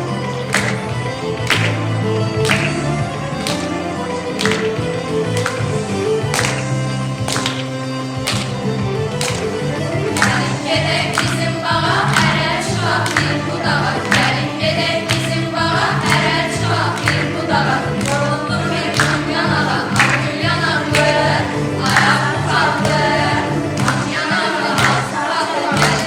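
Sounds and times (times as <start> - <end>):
group singing with accompaniment: 9.8 - 26.0.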